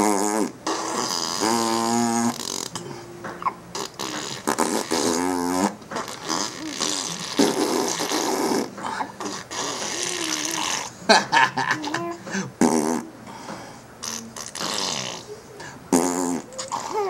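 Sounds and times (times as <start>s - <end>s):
people imitating farts: 0.0s - 2.8s, 3.7s - 10.9s, 12.6s - 13.1s, 14.0s - 15.3s, 15.9s - 17.0s.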